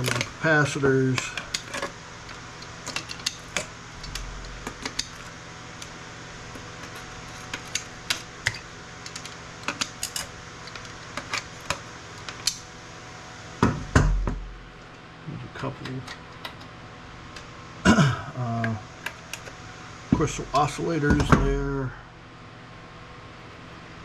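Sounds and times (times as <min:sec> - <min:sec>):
knock with low rumble: 0:13.6 - 0:14.5.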